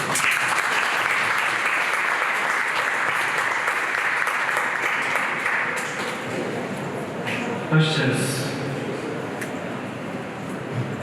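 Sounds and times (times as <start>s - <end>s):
audience applauding: 0.0s - 6.4s.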